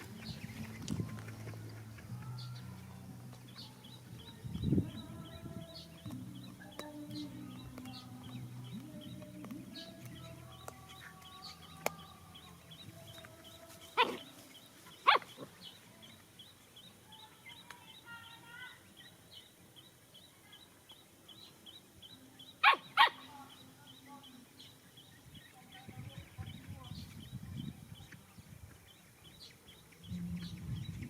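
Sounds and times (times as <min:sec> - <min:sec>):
dog barking: 0:14.0 - 0:14.4, 0:15.0 - 0:15.5, 0:22.6 - 0:23.3.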